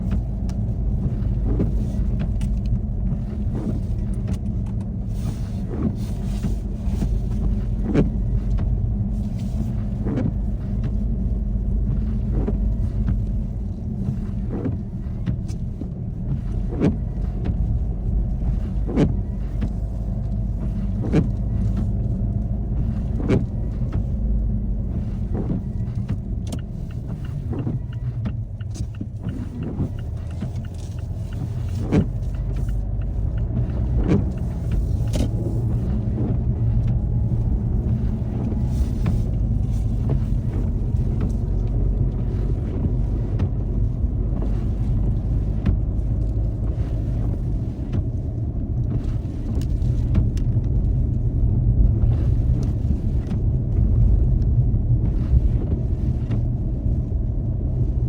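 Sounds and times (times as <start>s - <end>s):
road and engine rumble: 0.0s - 58.0s.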